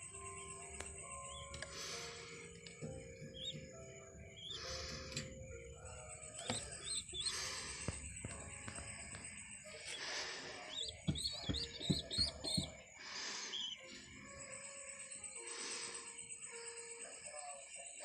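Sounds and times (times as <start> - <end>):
pigeon chicks peeping: 0.0 - 16.1
background music: 0.0 - 18.0
sharp knocks: 10.9 - 12.8.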